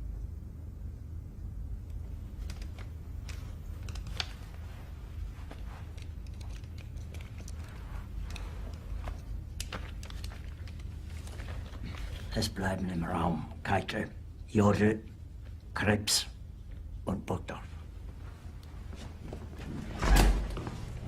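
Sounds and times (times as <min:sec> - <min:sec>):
low room hum: 0:00.0 - 0:21.0
small clicks and rustles: 0:01.8 - 0:12.4.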